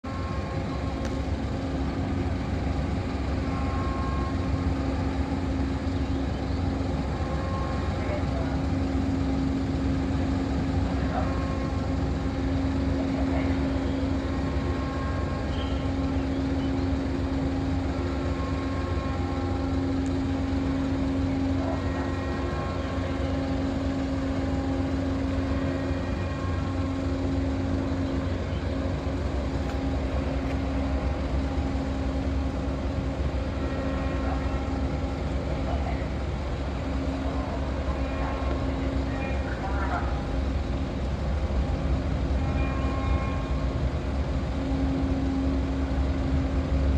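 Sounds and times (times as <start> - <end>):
machinery humming: 0.0 - 46.9
ship engines low rumble: 0.0 - 46.9.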